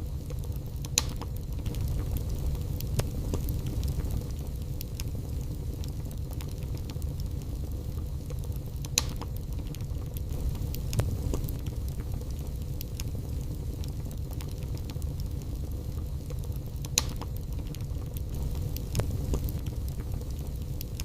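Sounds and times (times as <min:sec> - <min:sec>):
wood logs burning and crackling: 0:00.0 - 0:21.0.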